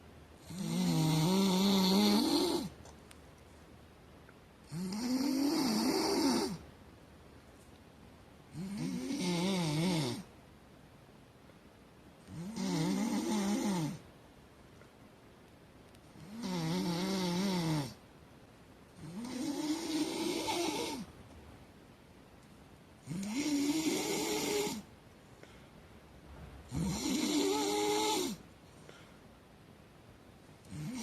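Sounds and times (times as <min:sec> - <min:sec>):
loud snoring: 0:00.4 - 0:02.8, 0:04.7 - 0:06.6, 0:08.5 - 0:10.3, 0:12.3 - 0:14.0, 0:16.2 - 0:18.0, 0:19.0 - 0:21.1, 0:23.0 - 0:24.9, 0:26.7 - 0:28.4, 0:30.7 - 0:31.0.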